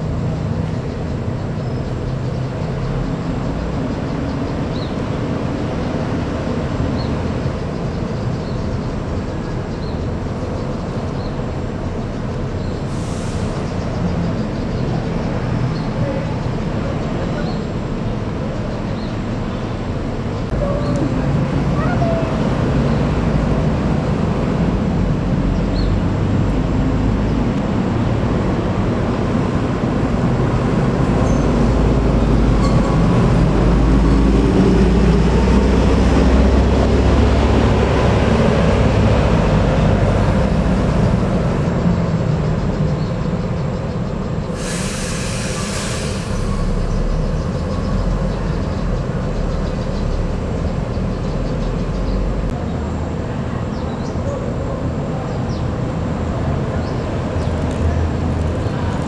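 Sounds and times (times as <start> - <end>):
diesel bus engine running: 0.0 - 59.0
short hiss: 44.5 - 46.8.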